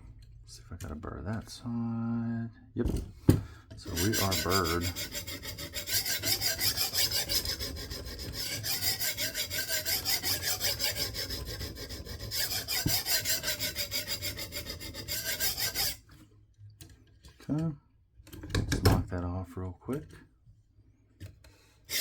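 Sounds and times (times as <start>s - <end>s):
sharpening stone rasping on knife: 3.9s - 16.0s.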